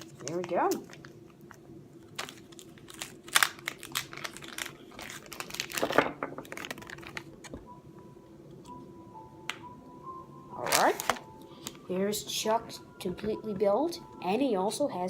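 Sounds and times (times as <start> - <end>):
plastic packaging crinkling: 0.0 - 7.6, 10.6 - 11.8.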